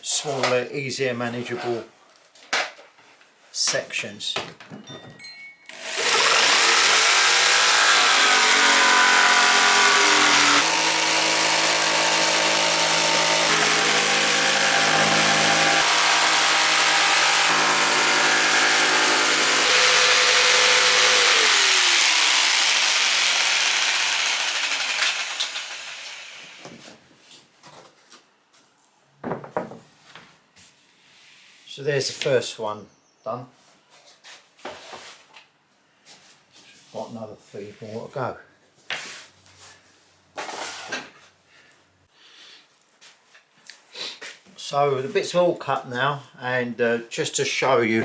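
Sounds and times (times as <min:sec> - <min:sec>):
electric jigsaw cutting board: 0:05.7 - 0:26.8
small knocks: 0:29.2 - 0:29.9.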